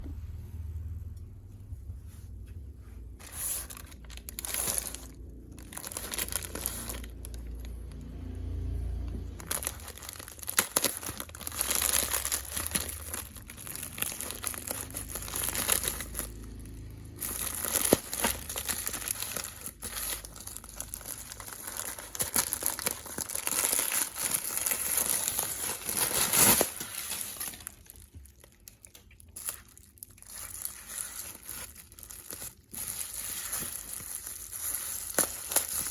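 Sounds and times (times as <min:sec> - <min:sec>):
packaging crinkling and tearing: 0:03.2 - 0:08.1, 0:09.1 - 0:35.9.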